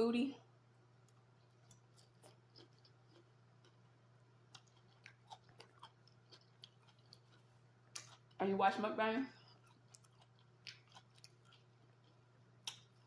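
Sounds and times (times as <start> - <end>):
steady low hum: 0.0 - 13.0
chewing salad: 0.9 - 8.5, 9.3 - 13.0.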